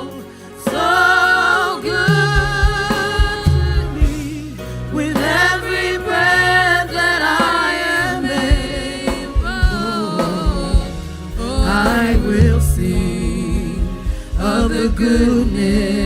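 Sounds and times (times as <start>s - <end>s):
sustained bass: 0.0s - 16.0s
drum hits: 2.1s - 4.4s, 8.4s - 16.0s.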